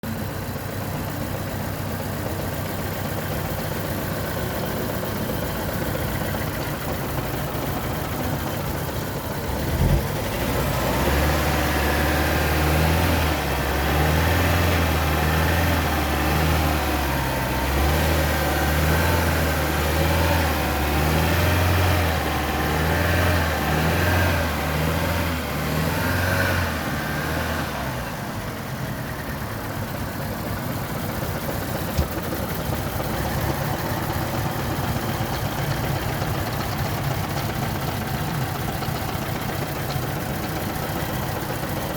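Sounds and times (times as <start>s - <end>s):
engine knock: 0.0s - 41.9s
car engine misfiring: 28.6s - 41.9s.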